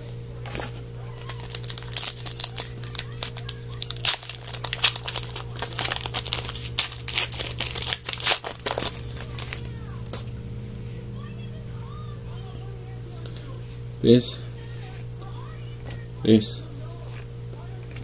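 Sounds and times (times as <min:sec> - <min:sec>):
steady low hum: 0:00.0 - 0:18.0
card pack wrapper crinkling: 0:00.5 - 0:10.2.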